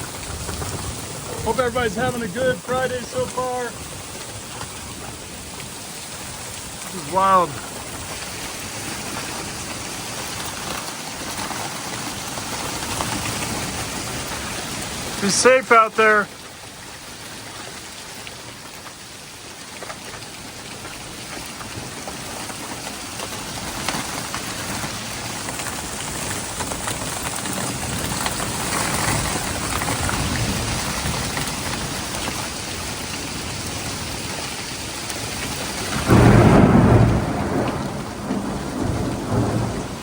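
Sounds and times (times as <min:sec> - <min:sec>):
heavy rain: 0:00.0 - 0:40.0
loud close thunder clap: 0:35.9 - 0:40.0.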